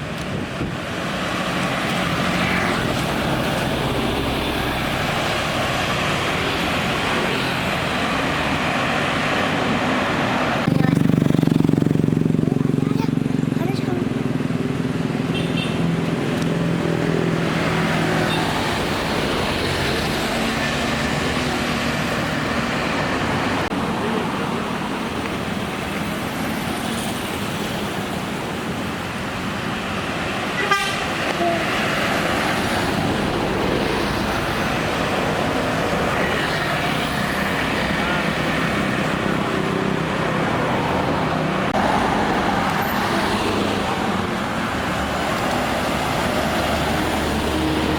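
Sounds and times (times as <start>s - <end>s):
bus and traffic engines: 0.0s - 47.9s
horn steady tone: 30.6s - 31.8s.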